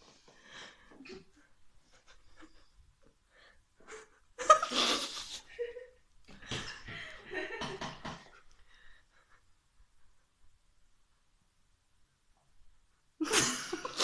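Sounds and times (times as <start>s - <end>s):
woman laughing: 3.8s - 8.0s, 13.2s - 14.0s.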